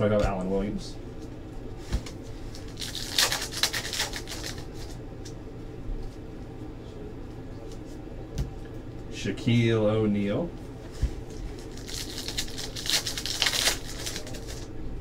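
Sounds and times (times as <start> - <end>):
steady low hum: 0.0 - 15.0
cards rustling by hand: 2.5 - 5.0, 11.5 - 14.7.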